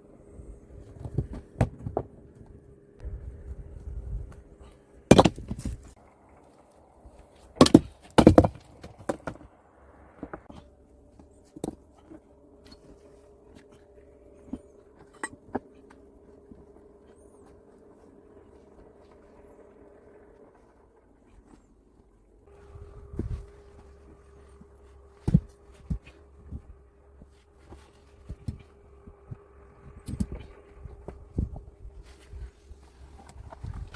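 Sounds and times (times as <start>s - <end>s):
faint steady hum: 0.0s - 33.9s
knocks and thuds on wood or stone: 5.1s - 5.9s, 7.6s - 9.5s, 25.2s - 26.6s.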